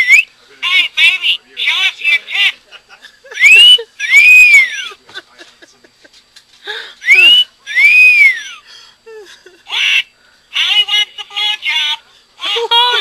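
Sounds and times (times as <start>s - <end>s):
parrot wolf-whistling: 0.0s - 0.3s, 3.4s - 4.8s, 7.0s - 8.6s
parrot harsh call: 3.4s - 4.8s, 7.0s - 8.6s, 9.7s - 10.1s.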